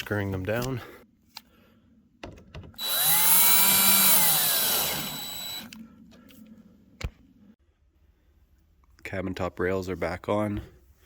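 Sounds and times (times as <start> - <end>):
power drill motor whining: 2.8 - 5.8.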